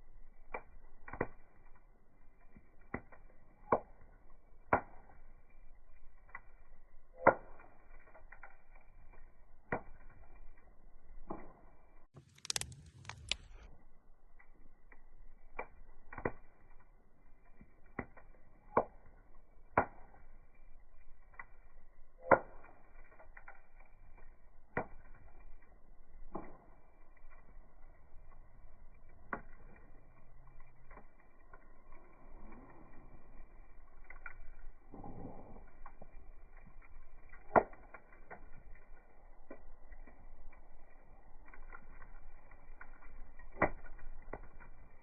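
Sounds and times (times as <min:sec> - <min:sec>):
high hissing crackle: 0:12.2 - 0:13.8.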